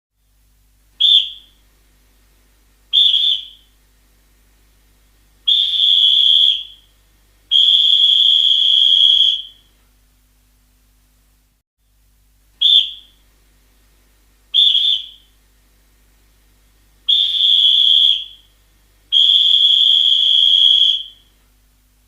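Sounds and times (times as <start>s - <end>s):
referee's whistle blasts: 3.0s - 3.6s, 12.6s - 13.2s, 14.6s - 15.3s, 17.1s - 18.4s, 19.2s - 21.2s.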